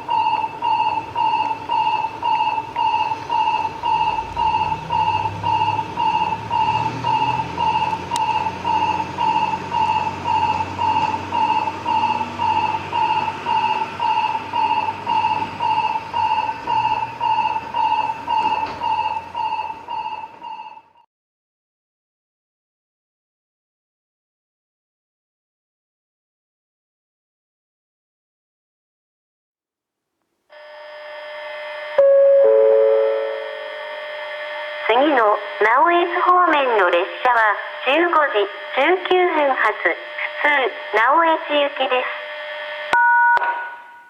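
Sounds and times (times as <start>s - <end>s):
repeating electronic alarm beep: 0.0s - 21.0s, 32.0s - 33.8s.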